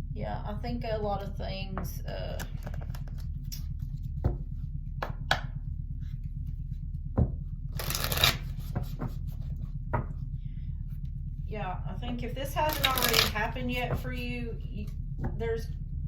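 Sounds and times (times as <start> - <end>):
steady low hum: 0.0 - 16.0
cards flicked and tapped: 2.4 - 3.6, 7.8 - 9.4, 12.7 - 13.4
cards riffling: 2.4 - 3.7, 7.8 - 9.2, 12.7 - 13.4.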